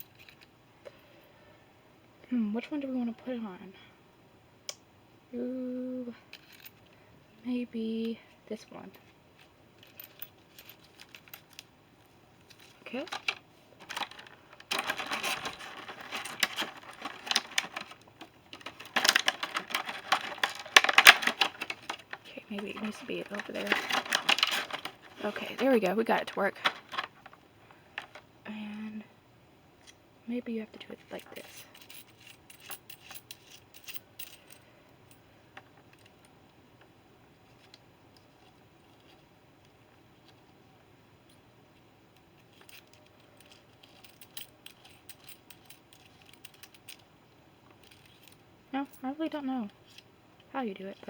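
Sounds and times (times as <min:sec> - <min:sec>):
small hard parts clicking and rattling: 0:06.3 - 0:07.0, 0:09.0 - 0:11.7, 0:12.4 - 0:28.3, 0:31.1 - 0:36.3, 0:42.2 - 0:49.0.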